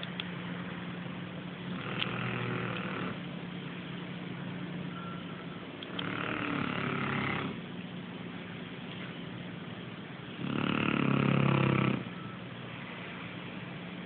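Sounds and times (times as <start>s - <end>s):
steady low hum: 0.0s - 14.0s
rasping snores: 1.8s - 3.2s, 5.9s - 7.6s, 10.4s - 12.1s.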